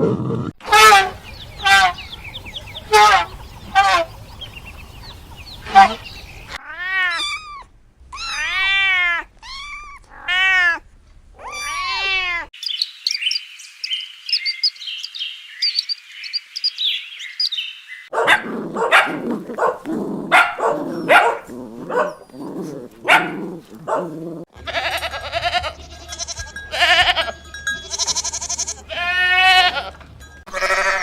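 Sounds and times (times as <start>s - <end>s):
high thin chirping: 0.7s - 6.6s
dog barking: 0.8s - 6.6s, 18.1s - 22.3s, 23.0s - 24.2s.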